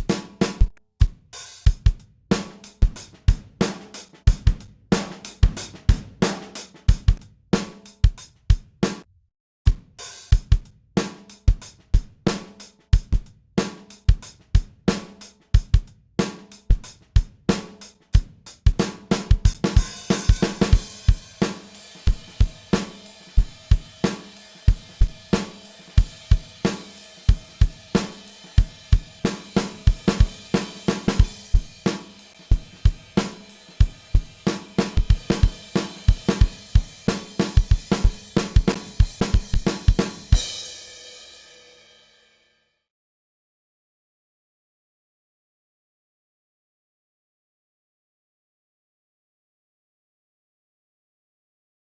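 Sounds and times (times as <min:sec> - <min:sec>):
hi-hat and cymbals: 0:00.0 - 0:08.4, 0:10.0 - 0:42.2
kick and snare drum beat: 0:00.0 - 0:09.1, 0:09.7 - 0:41.0.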